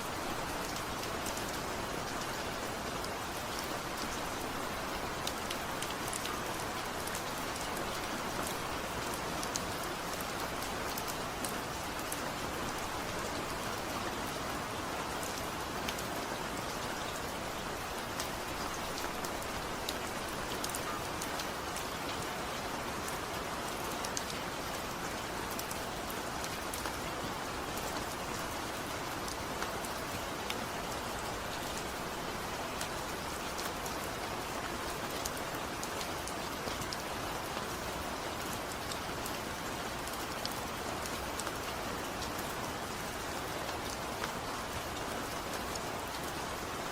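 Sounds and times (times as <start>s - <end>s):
heavy rain falling: 0.0s - 46.9s.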